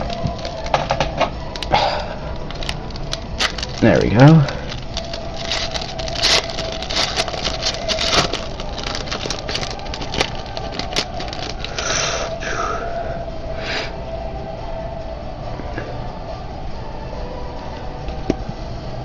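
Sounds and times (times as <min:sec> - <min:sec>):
foil wrapper crinkling: 0:00.0 - 0:12.0
faint steady hum: 0:00.0 - 0:19.0
trading cards handled: 0:02.4 - 0:11.8.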